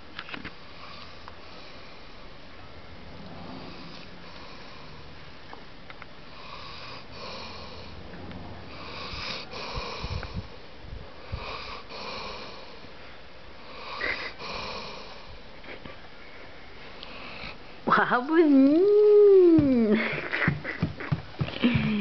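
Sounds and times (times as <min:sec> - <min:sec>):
dog snoring: 0:06.3 - 0:08.0, 0:08.7 - 0:10.5, 0:11.3 - 0:12.8, 0:13.6 - 0:15.3.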